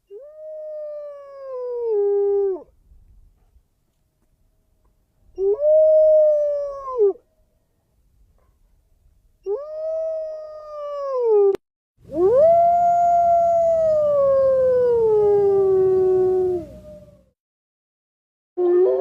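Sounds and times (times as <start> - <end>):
wolf howling: 9.4 - 17.3
second higher wolf howl: 9.5 - 17.3.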